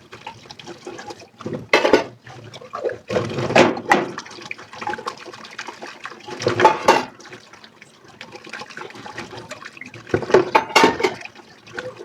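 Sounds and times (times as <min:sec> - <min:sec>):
tap water splashing into sink: 0:00.0 - 0:12.0
dishes clicking and clinking: 0:01.7 - 0:02.2, 0:06.5 - 0:07.2, 0:10.2 - 0:11.3.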